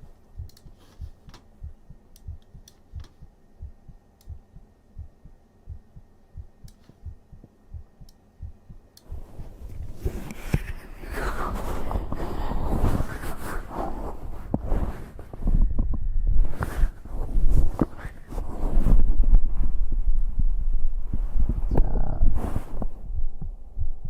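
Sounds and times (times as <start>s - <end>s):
rustling noise: 0.0s - 1.5s, 9.1s - 23.4s
heartbeat thumps: 0.0s - 24.0s
faint clicks: 0.4s - 1.5s.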